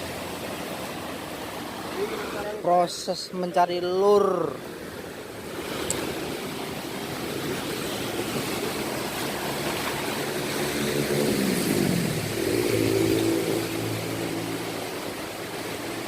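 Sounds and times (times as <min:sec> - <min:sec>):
engine running: 0:06.0 - 0:16.0.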